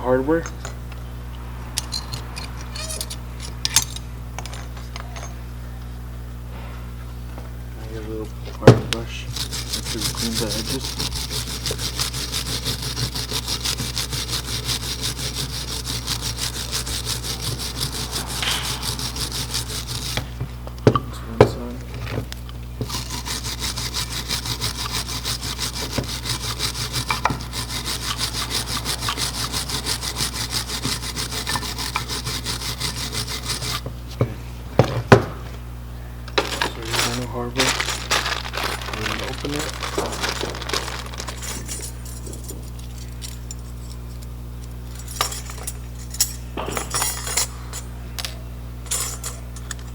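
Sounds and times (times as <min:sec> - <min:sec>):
wire brush scrubbing metal: 0:09.0 - 0:20.4, 0:22.8 - 0:33.8, 0:36.4 - 0:44.1.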